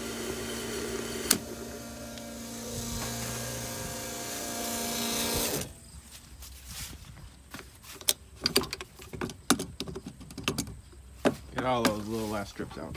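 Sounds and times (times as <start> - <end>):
electric fuel pump humming: 0.0 - 5.8
sharp clicks and knocks: 8.0 - 12.0.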